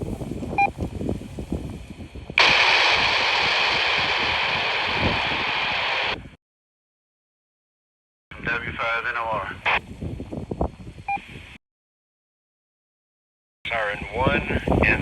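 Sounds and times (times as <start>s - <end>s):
wind buffeting microphone: 0.0s - 6.4s, 8.3s - 11.6s, 13.7s - 15.0s
radio static hiss: 2.4s - 6.4s, 8.3s - 9.8s, 13.7s - 15.0s.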